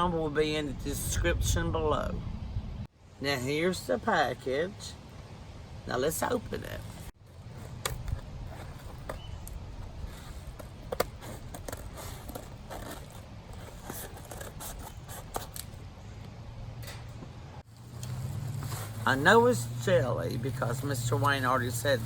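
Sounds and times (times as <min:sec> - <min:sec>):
package scraping and rustling: 0:06.9 - 0:15.8, 0:18.0 - 0:19.2.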